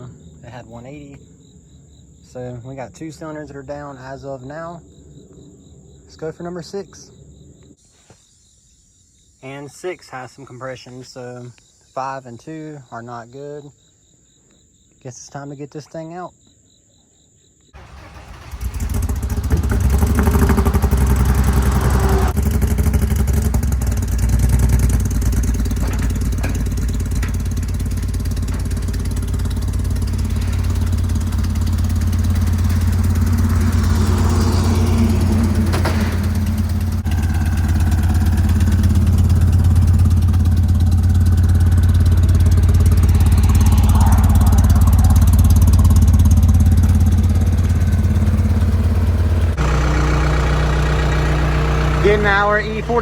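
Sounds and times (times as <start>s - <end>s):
forklift engine humming: 17.8s - 53.0s.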